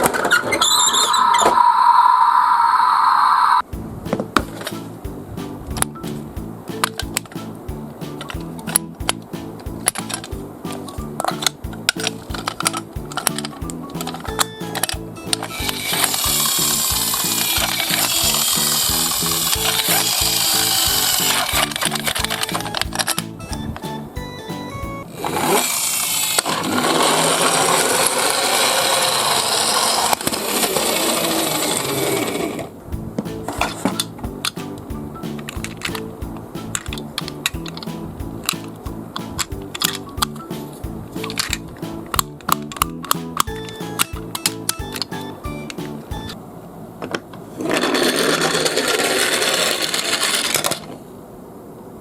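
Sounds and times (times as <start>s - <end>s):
toy truck rattling down a slope: 15.4s - 22.7s, 25.1s - 32.7s, 47.6s - 51.0s
toy cars clattering together: 47.1s - 51.0s.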